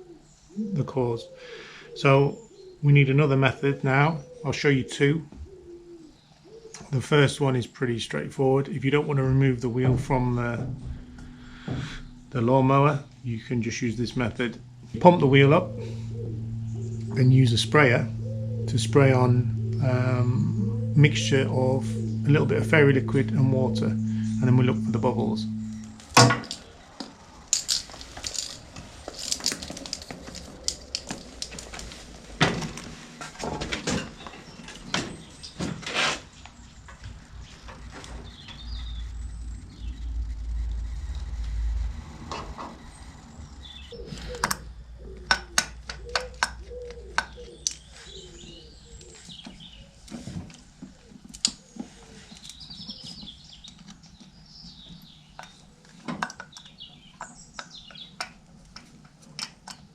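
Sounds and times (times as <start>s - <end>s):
birds chirping faintly: 0.0s - 32.4s
clicks and knocks of handling: 50.1s - 59.9s.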